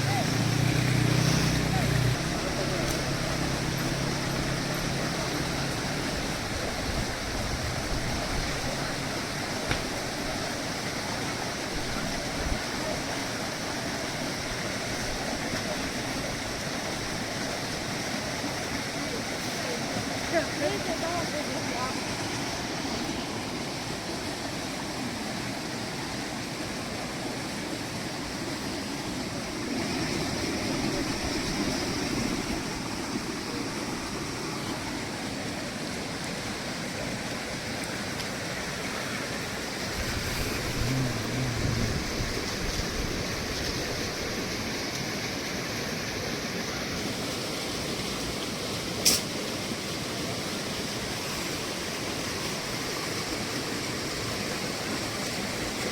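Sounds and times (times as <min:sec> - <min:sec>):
flowing water rushing: 0:00.0 - 0:55.9
sharp click: 0:49.0 - 0:49.3.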